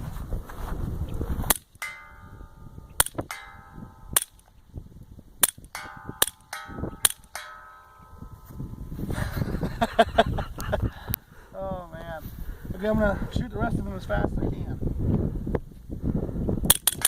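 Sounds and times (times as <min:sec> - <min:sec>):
steel target clanging: 0:01.5 - 0:04.6, 0:05.4 - 0:08.7.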